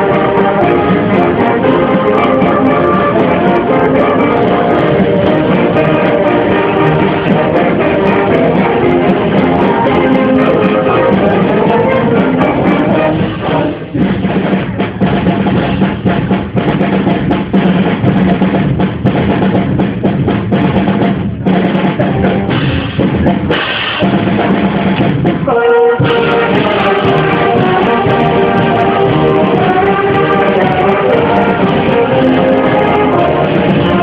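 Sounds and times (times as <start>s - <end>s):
live band music: 0.0s - 34.0s
snare and bass drum hits: 13.0s - 34.0s.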